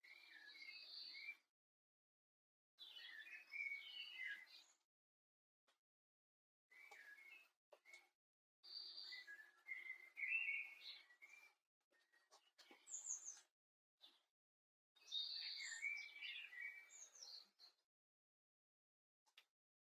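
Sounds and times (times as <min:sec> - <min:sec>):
songbirds singing and chirping: 0:00.0 - 0:01.4, 0:02.8 - 0:04.8, 0:06.7 - 0:14.2, 0:15.0 - 0:17.8.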